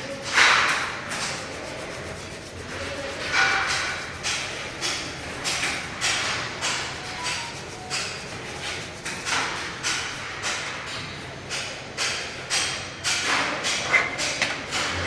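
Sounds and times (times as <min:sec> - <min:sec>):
paper rubbing on steel: 0:00.0 - 0:10.6.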